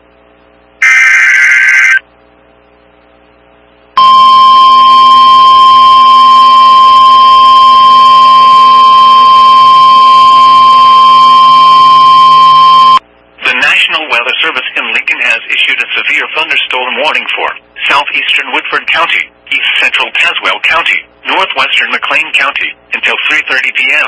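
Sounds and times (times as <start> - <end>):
buzzy digital data burst: 0.8 - 2.0
steady warning alarm tone: 0.8 - 2.0, 4.0 - 13.0.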